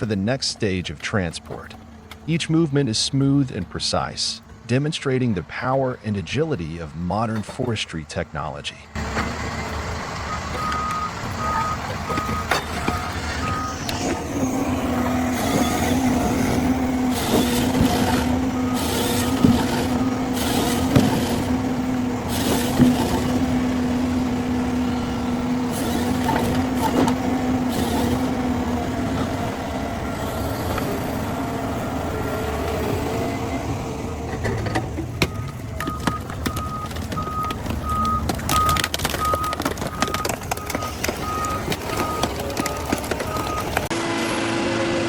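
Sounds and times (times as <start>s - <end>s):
heavy machine engine whining: 0.0s - 45.0s
faint reversing alarm beeping: 10.3s - 16.4s, 17.9s - 20.7s, 35.3s - 43.8s.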